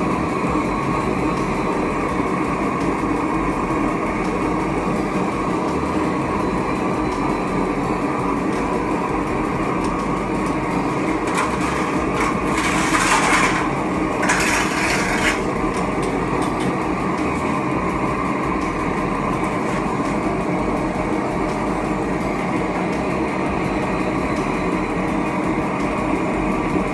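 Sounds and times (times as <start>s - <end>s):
furnace rushing noise: 8.1s - 22.5s.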